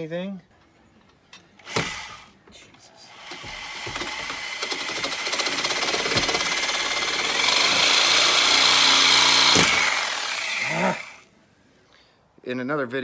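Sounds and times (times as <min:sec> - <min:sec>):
reciprocating saw cutting steel: 0:03.1 - 0:11.2.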